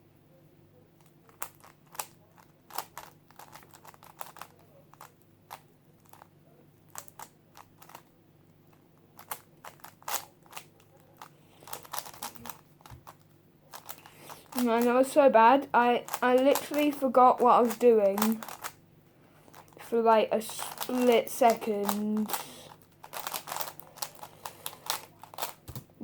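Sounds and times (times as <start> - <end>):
puzzle cube clicking: 1.3 - 6.3, 6.9 - 8.0, 9.2 - 15.0, 15.8 - 18.8, 20.5 - 25.9.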